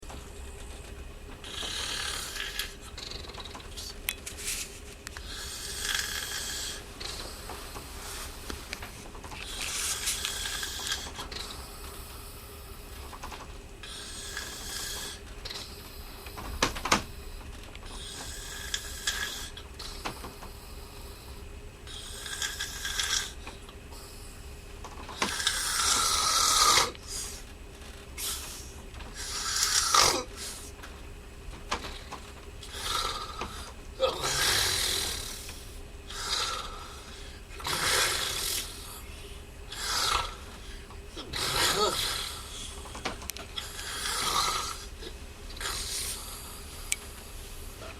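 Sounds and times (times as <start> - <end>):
person snoring: 1.4 - 4.0, 5.2 - 8.4, 9.4 - 11.7, 25.3 - 27.3, 32.6 - 39.1, 39.7 - 42.8, 43.6 - 46.9.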